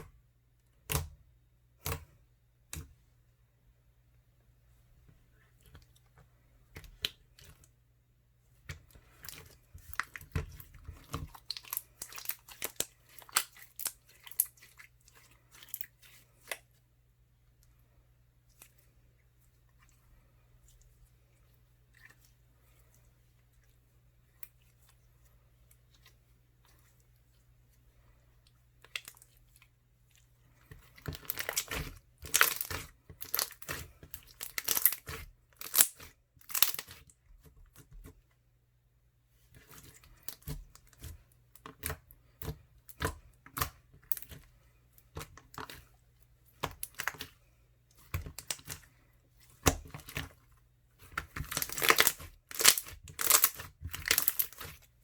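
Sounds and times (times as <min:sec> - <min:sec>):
crunchy slime crackling: 0:30.9 - 0:37.1, 0:51.0 - 0:54.9.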